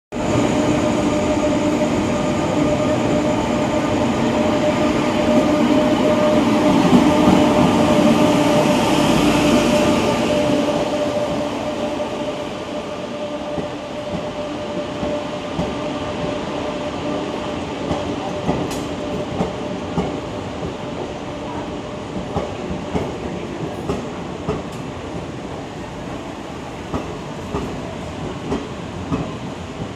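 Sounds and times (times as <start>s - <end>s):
train rumble: 0.1s - 29.9s
electric locomotive whine: 0.2s - 23.5s.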